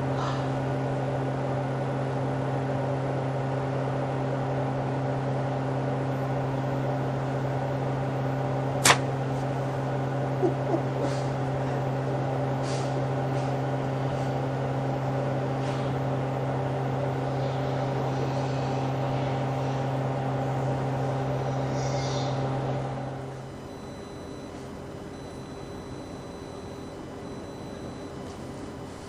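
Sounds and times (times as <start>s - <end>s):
mechanical hum with low drone: 0.0s - 29.0s.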